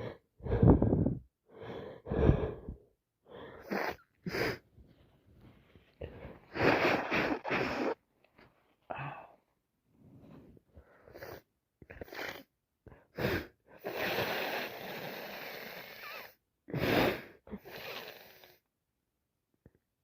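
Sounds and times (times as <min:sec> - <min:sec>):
breathy rush: 0:00.0 - 0:04.6
sniffling: 0:00.0 - 0:04.7, 0:05.6 - 0:08.0.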